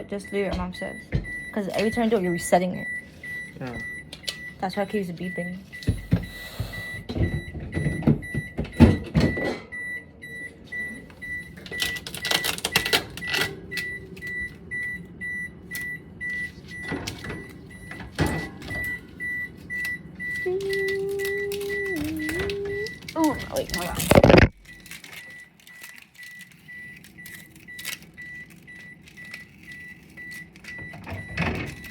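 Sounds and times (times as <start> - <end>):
refrigerator panel beeping: 0.0 - 31.9
knocks and plastic rattles: 5.8 - 9.9, 28.2 - 31.9.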